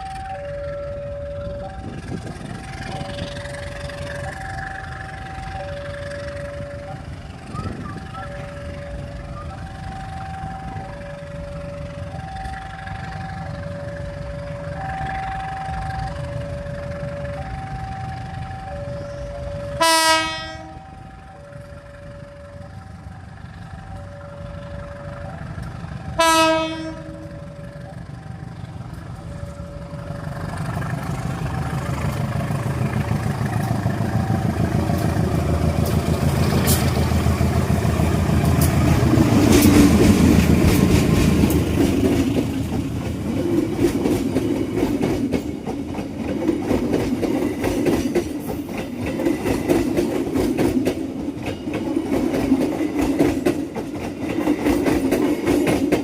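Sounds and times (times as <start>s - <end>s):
train rumble passing: 0.0s - 56.0s
train wheels clacking on rails: 0.0s - 56.0s
train horn blast: 18.3s - 22.6s, 24.0s - 28.0s.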